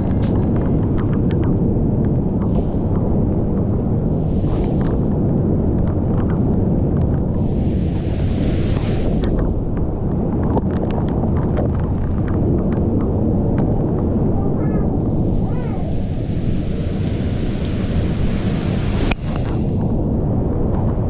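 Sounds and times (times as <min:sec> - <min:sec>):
heavy rain downpour: 0:02.4 - 0:05.2, 0:07.1 - 0:10.0, 0:14.8 - 0:20.0
raindrops tapping close by: 0:15.4 - 0:19.9.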